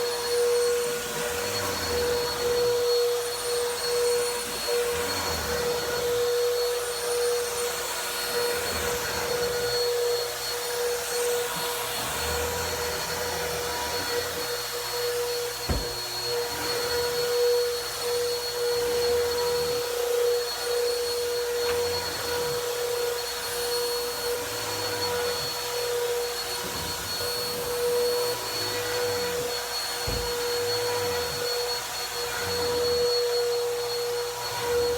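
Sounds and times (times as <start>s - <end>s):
vacuum cleaner on carpet: 0.0s - 34.9s.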